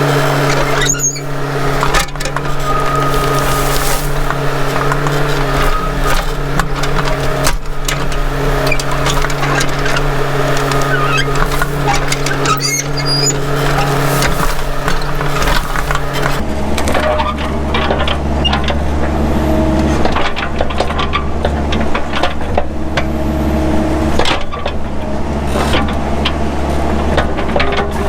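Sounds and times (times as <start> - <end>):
branches cracking and snapping: 0.0 - 16.4
excavator diesel engine running: 0.0 - 28.0.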